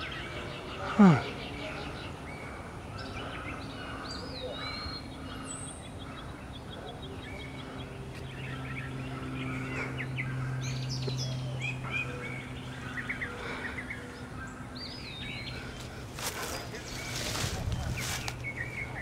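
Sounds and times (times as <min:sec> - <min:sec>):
songbirds chirping and singing: 0:00.0 - 0:19.0
steady low hum: 0:00.0 - 0:19.0.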